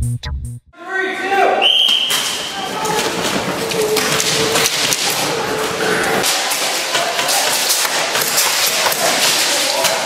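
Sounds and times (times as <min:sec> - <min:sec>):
pellets striking hard surfaces: 0:06.2 - 0:10.0.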